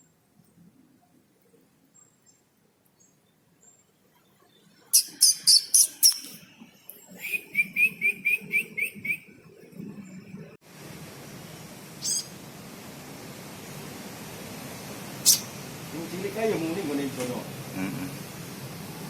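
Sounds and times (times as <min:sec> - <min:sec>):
bird chirping and trilling: 0:04.6 - 0:06.4, 0:12.0 - 0:12.4, 0:15.2 - 0:15.6.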